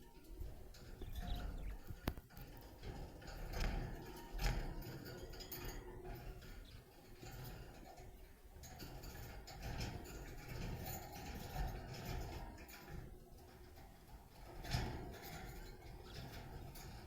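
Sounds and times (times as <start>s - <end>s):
budgerigars clicking and tapping: 0.4s - 2.5s.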